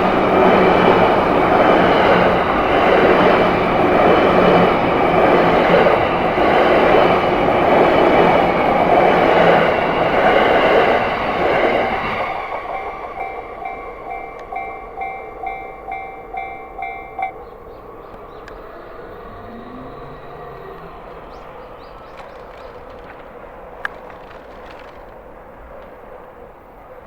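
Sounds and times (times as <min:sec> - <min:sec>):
train rumbling past: 0:00.0 - 0:27.0
level crossing bell clanging: 0:12.7 - 0:17.9.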